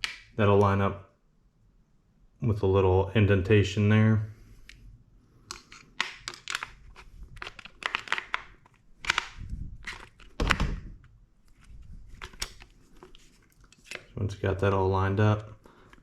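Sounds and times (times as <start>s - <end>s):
gun parts clicking and knocking: 5.4s - 10.7s, 11.6s - 14.2s.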